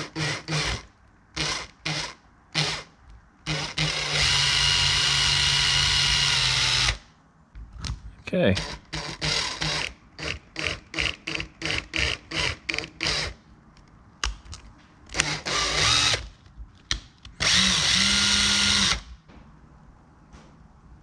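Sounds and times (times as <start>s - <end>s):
power drill drilling: 0.0s - 0.8s, 1.4s - 2.9s, 3.5s - 7.0s, 8.6s - 13.4s, 15.2s - 16.2s, 17.4s - 19.1s.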